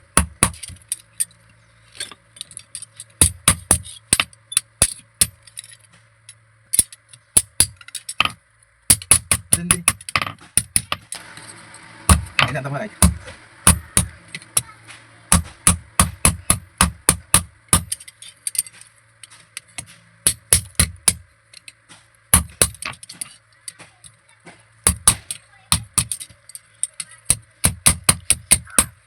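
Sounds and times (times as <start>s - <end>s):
faint steady hum: 0.0s - 29.0s
hammer striking metal on anvil: 12.1s - 18.8s.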